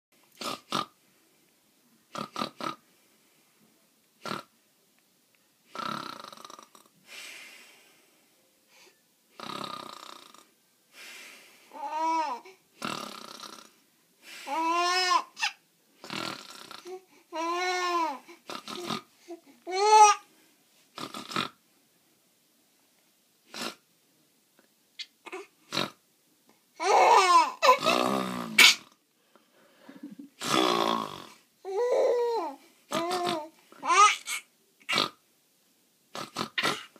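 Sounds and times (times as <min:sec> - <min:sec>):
fake snores and snorts: 0:00.3 - 0:01.0, 0:02.1 - 0:02.8, 0:04.2 - 0:04.5, 0:05.7 - 0:07.0, 0:09.3 - 0:10.5, 0:12.8 - 0:13.8, 0:16.0 - 0:17.0, 0:18.3 - 0:19.1, 0:21.0 - 0:21.6, 0:23.5 - 0:23.8, 0:25.3 - 0:26.0, 0:27.6 - 0:29.0, 0:30.4 - 0:31.4, 0:32.9 - 0:33.5, 0:34.3 - 0:35.2, 0:36.1 - 0:36.9
person laughing: 0:29.9 - 0:30.4.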